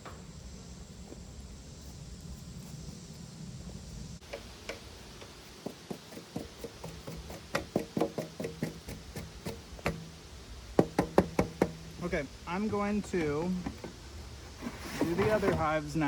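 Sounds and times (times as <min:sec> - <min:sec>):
sharp knocks and clicks: 0:04.2 - 0:10.1, 0:10.8 - 0:12.0.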